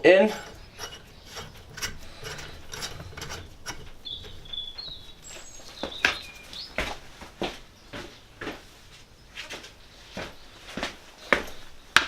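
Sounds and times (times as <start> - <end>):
high squeaks: 0.0 - 6.7.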